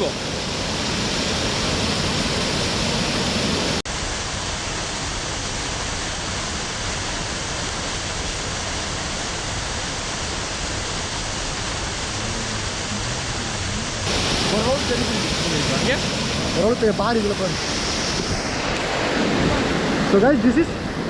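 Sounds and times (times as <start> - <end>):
waterfall pouring into pool: 3.7 - 17.7.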